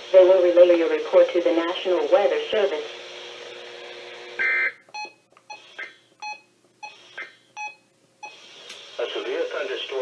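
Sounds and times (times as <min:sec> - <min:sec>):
short electronic beeps: 0:04.4 - 0:08.4.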